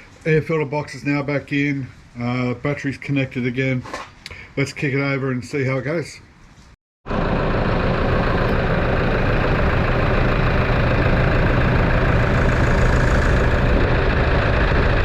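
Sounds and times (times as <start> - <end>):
engine idling: 7.1 - 15.0.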